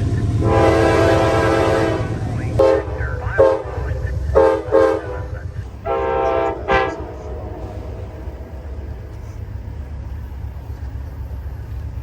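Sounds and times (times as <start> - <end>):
train low rumble: 0.0 - 12.0
locomotive air horn toots: 0.4 - 9.8.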